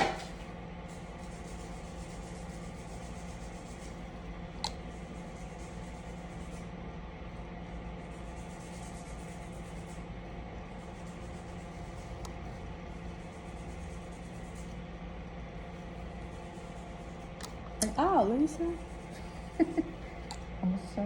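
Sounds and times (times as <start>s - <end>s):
low machine hum with hiss: 0.0s - 21.0s.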